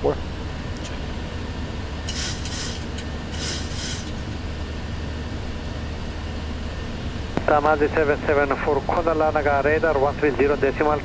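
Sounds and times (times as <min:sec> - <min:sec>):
low rumble of airflow and engine: 0:00.0 - 0:11.0
hissing rustles: 0:02.1 - 0:04.4.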